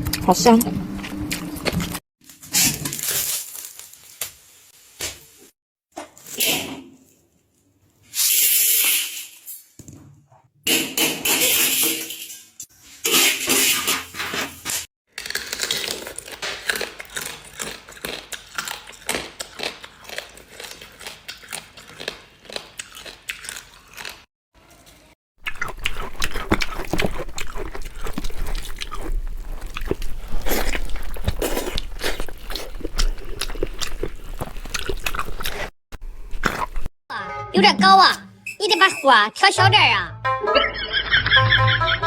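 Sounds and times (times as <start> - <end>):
chewing and crunching food: 0.9 - 2.0, 15.1 - 36.9.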